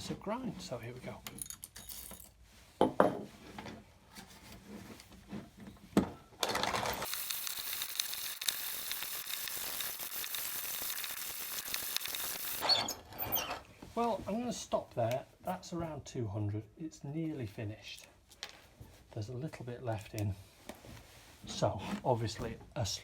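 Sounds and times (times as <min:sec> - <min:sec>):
coffee grinder crunching beans: 0:06.4 - 0:13.4.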